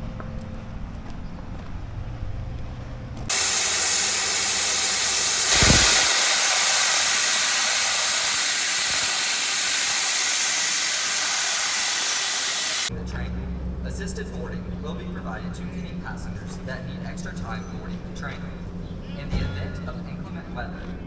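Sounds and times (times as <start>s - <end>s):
train steam hiss: 3.3s - 12.9s.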